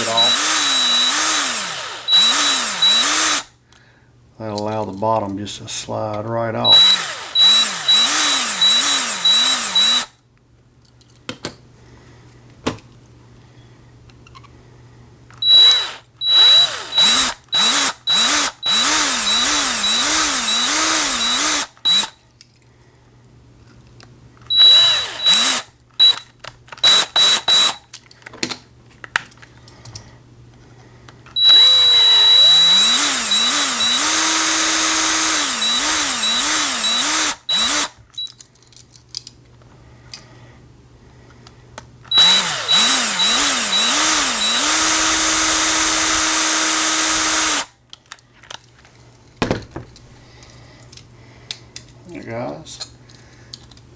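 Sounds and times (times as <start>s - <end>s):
small power drill drilling: 0.0s - 3.5s, 6.6s - 10.1s, 15.4s - 22.2s, 24.4s - 27.8s, 31.4s - 38.0s, 42.1s - 47.7s.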